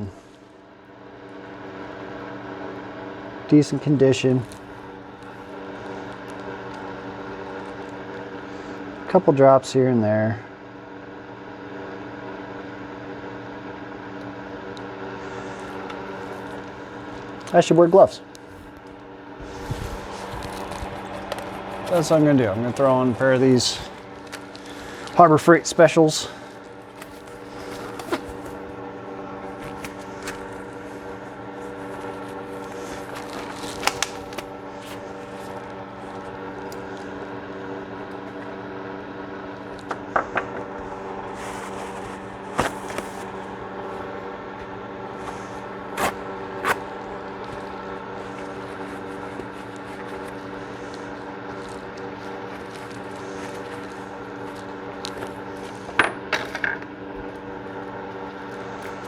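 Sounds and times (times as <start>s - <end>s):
steady machine hum: 0.0s - 59.0s
clicks and knocks of small objects: 52.6s - 56.9s.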